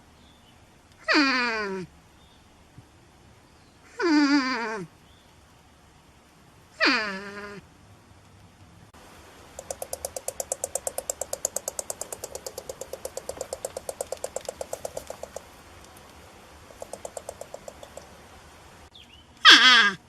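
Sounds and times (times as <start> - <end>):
porcupine clicking clatter: 9.5 - 18.2.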